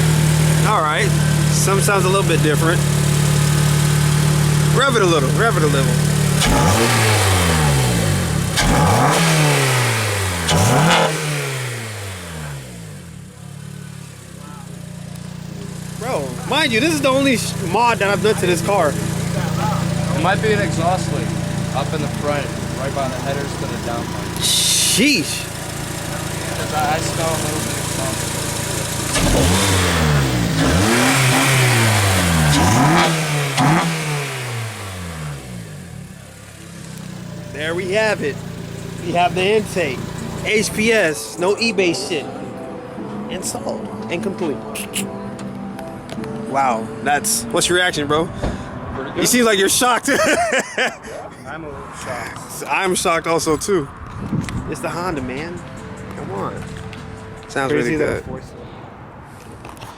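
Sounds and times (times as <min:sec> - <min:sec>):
car engine revving: 0:00.0 - 0:44.5.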